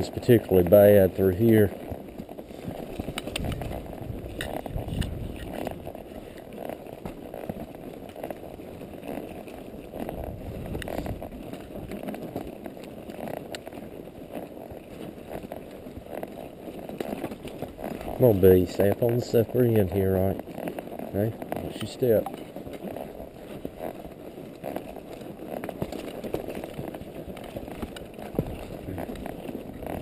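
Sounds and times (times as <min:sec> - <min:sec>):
hooves squelching in mud: 0:00.0 - 0:30.0
wind buffeting microphone: 0:02.7 - 0:05.9, 0:10.0 - 0:11.3.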